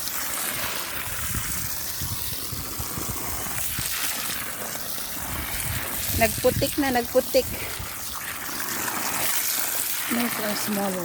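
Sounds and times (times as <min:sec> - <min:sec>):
garden hose spraying water on soil: 0:00.0 - 0:11.0.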